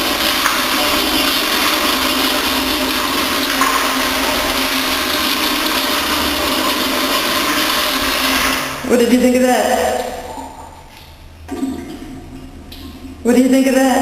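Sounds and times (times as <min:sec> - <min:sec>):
toilet flushing: 0:00.0 - 0:14.0.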